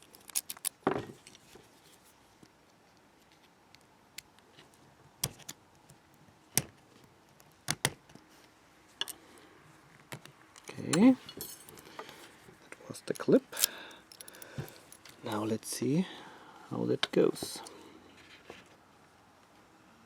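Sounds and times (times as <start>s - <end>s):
lock cylinder metallic clicks: 13.5s - 15.4s.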